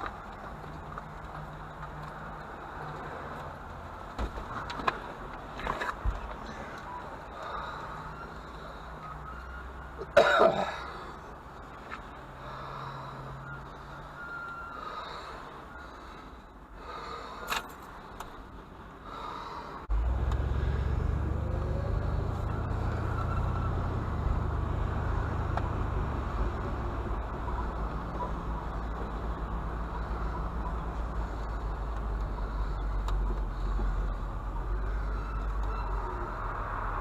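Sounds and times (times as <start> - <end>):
vehicle engine running: 19.9 - 35.8.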